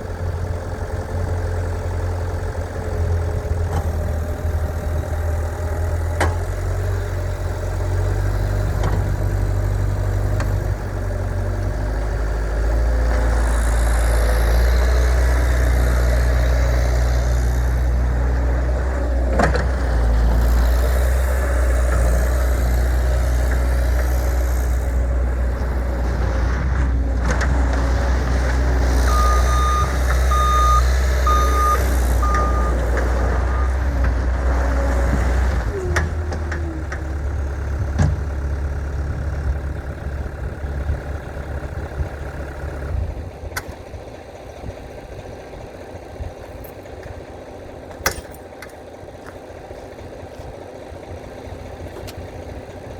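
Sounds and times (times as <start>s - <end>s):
diesel engine running: 0.0s - 52.9s
back-up alarm beeping: 29.1s - 34.0s.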